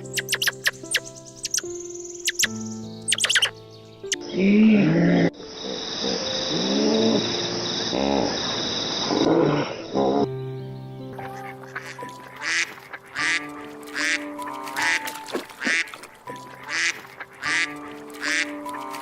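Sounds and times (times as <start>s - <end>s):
music with long held notes: 0.0s - 19.0s.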